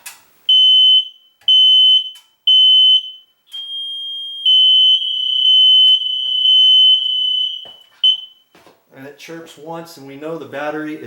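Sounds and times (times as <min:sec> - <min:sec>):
high-pitched smoke alarm beeps: 0:00.5 - 0:08.5
unbroken smoke alarm tone: 0:00.5 - 0:08.5.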